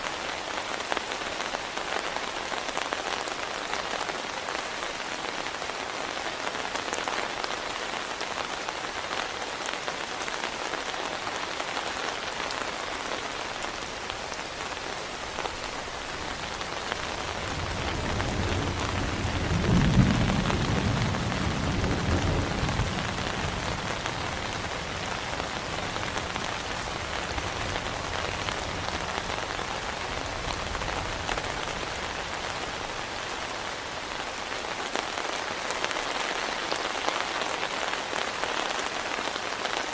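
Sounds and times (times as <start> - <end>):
heavy rain falling: 0.0 - 39.9
thunder rumble: 17.0 - 26.5.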